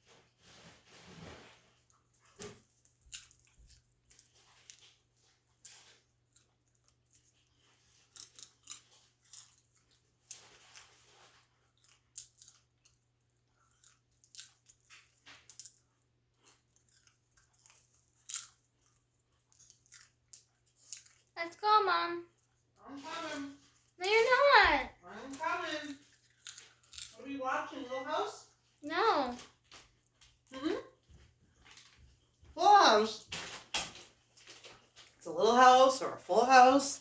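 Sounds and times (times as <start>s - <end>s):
popcorn crunching: 6.3s - 21.4s, 25.2s - 27.3s.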